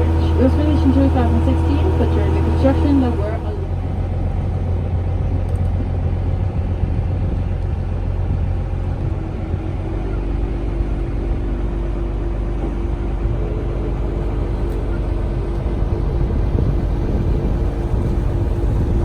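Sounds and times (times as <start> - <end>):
steady higher hum: 0.0 - 5.1
boat engine rumbling: 0.0 - 19.0.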